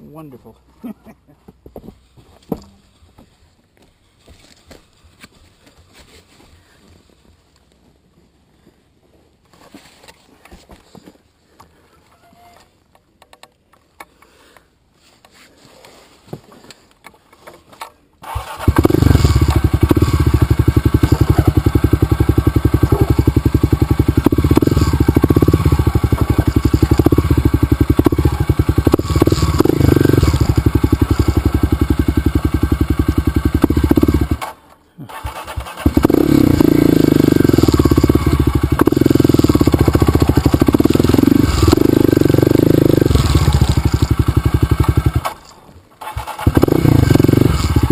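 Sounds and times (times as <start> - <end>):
motorcycle engine starting and running: 18.2 - 47.9.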